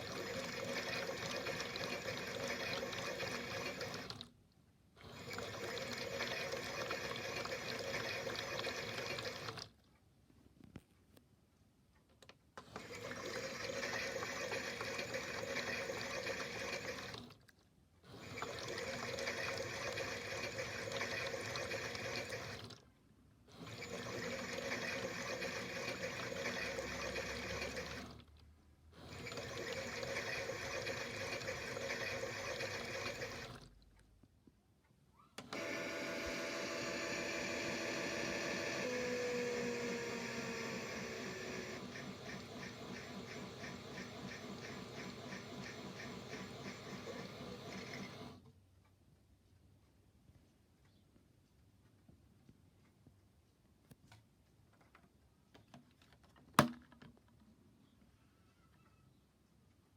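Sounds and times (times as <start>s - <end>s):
recorded water filling from speaker: 18.2s - 22.8s.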